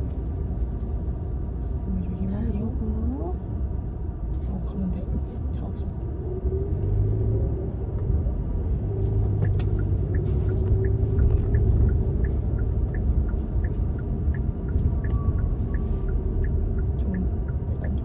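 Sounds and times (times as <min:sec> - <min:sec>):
car engine and road rumble: 0:00.0 - 0:18.0
turn signal ticking: 0:09.0 - 0:18.0.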